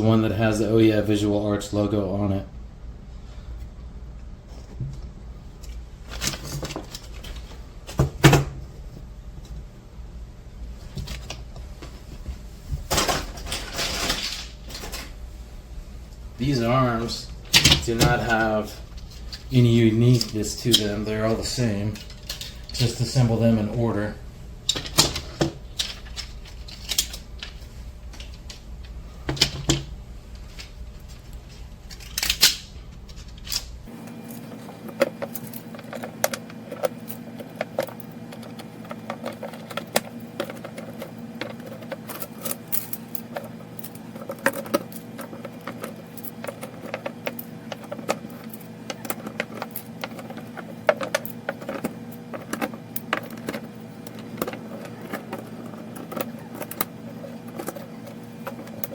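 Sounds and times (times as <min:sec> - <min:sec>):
faint steady hum: 0:00.0 - 0:58.9
small hard parts clicking and clinking: 0:17.5 - 0:23.1, 0:24.7 - 0:29.8, 0:31.9 - 0:33.8, 0:34.4 - 0:58.9.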